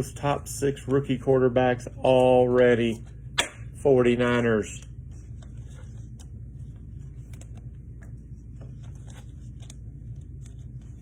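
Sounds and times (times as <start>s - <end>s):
cards and packaging rustling: 4.6s - 11.0s.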